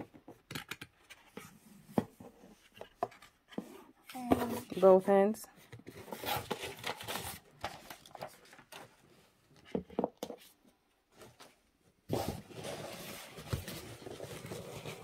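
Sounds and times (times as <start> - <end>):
cardboard scraping rustle: 12.1 - 15.0.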